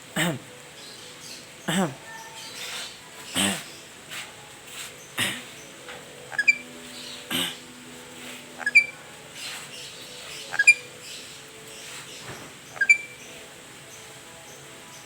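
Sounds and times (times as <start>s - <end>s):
parrot squeaky calls: 6.3s - 7.6s, 8.6s - 12.0s, 12.7s - 13.3s.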